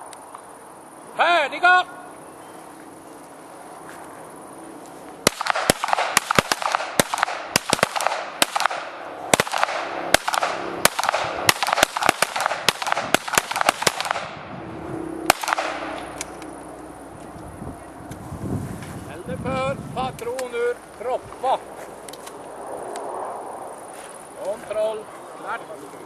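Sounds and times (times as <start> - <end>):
pistol shots: 5.2 - 14.4, 15.3 - 16.2.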